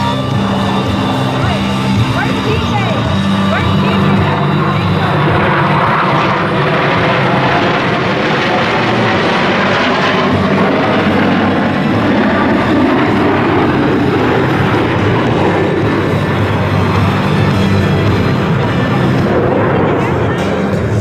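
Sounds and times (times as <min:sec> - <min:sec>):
jet roar flying over: 0:00.0 - 0:21.0.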